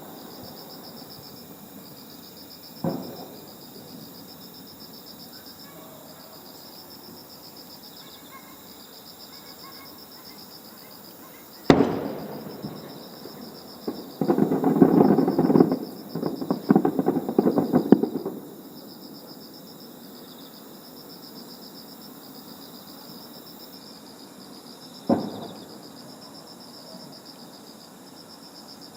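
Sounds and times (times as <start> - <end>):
firework crackling: 0.0 - 4.3, 11.6 - 19.0, 25.1 - 25.9
crickets chirping: 0.0 - 28.9
firework boom with echo: 11.7 - 18.4, 25.1 - 25.6.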